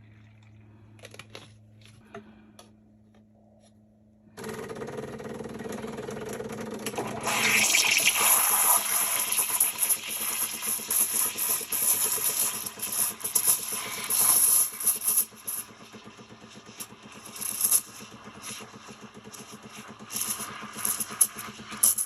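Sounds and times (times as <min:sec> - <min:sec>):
espresso machine buzz: 0:04.4 - 0:22.0
steam wand hissing: 0:07.1 - 0:22.0.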